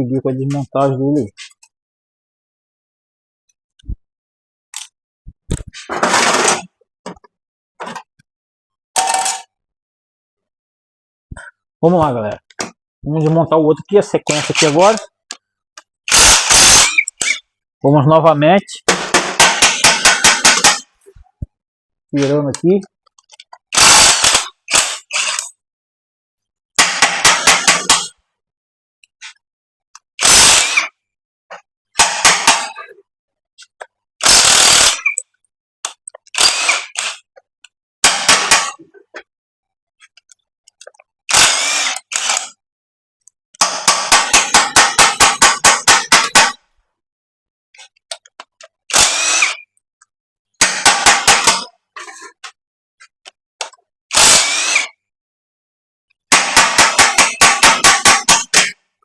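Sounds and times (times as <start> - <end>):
ratchet wrench clicking: 23.8 - 25.5, 34.2 - 35.2, 41.3 - 42.5.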